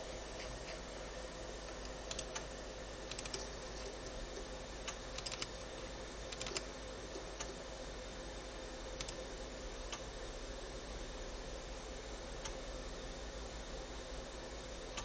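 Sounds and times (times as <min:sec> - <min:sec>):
computer hum: 0:00.0 - 0:15.0
keyboard keys clicking: 0:03.1 - 0:03.5, 0:04.9 - 0:05.5, 0:06.3 - 0:06.6.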